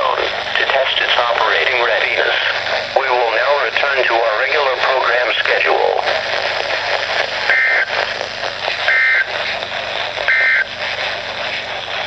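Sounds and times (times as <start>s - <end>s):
radio hiss: 0.0s - 12.0s
two-pitch digital data tones: 7.5s - 7.9s, 8.9s - 9.3s, 10.3s - 10.7s.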